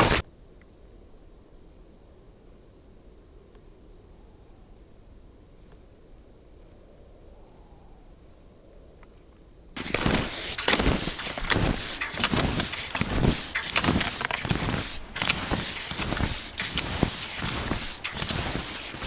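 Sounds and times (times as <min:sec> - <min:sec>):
skis crunching over snow: 0:00.0 - 0:00.2, 0:09.8 - 0:19.0.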